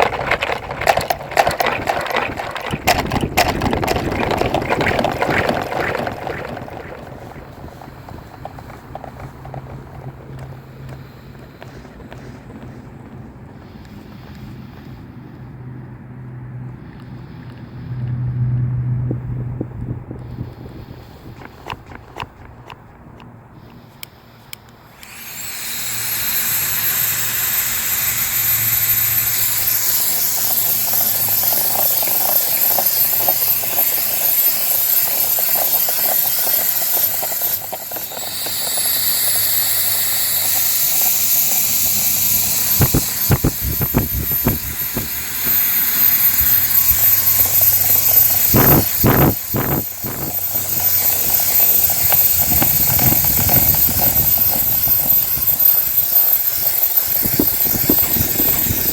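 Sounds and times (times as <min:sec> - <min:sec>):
hairdryer motor whine and hiss: 0:24.6 - 0:58.9.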